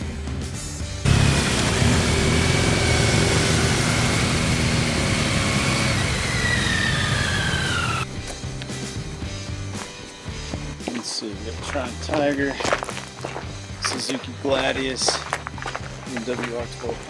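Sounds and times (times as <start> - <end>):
vehicle engine whining: 1.0 - 8.2.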